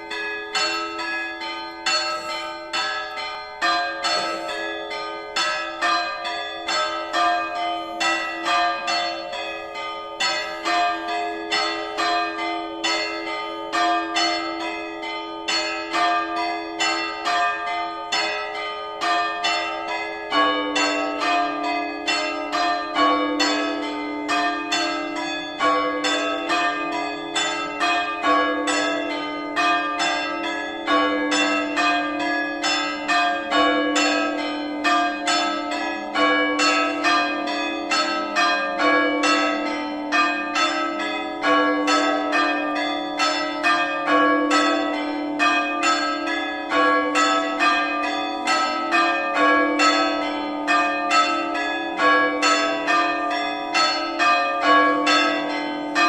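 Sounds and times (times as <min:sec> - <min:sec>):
deep bell tolling: 0:00.0 - 0:14.3.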